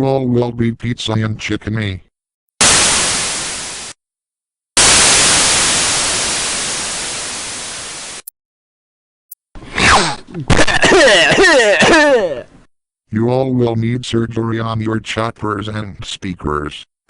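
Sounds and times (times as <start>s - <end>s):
white-noise static bursts: 2.6s - 4.0s, 4.8s - 8.3s.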